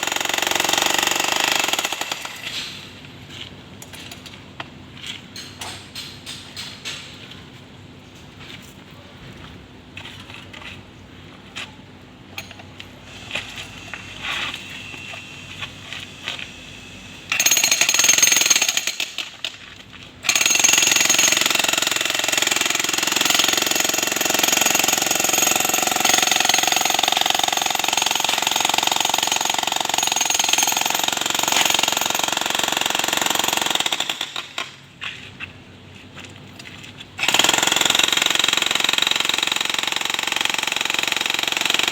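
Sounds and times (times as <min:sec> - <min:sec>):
demolition hammer chiselling concrete: 0:00.0 - 0:02.5, 0:17.3 - 0:19.5, 0:20.3 - 0:34.8, 0:37.2 - 0:41.9.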